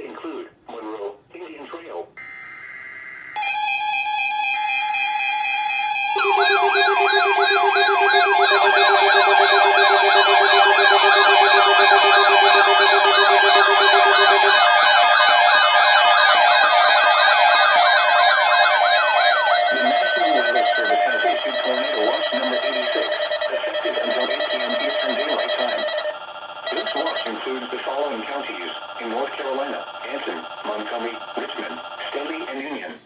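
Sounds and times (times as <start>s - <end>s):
sirens wailing up and down: 3.4s - 32.5s
steady alert tone: 3.4s - 32.5s
buzzy data bursts: 6.2s - 32.4s.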